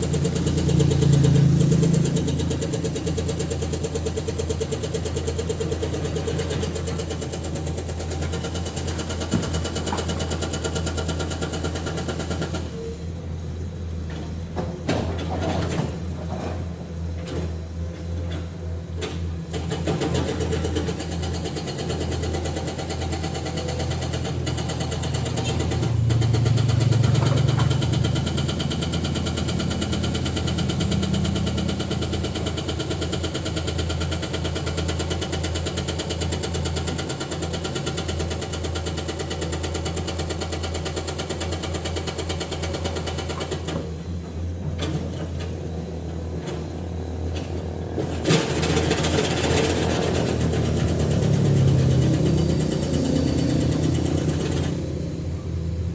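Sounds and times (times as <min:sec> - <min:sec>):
diesel engine running: 0:00.0 - 0:06.2, 0:21.6 - 0:35.4, 0:43.9 - 0:55.9.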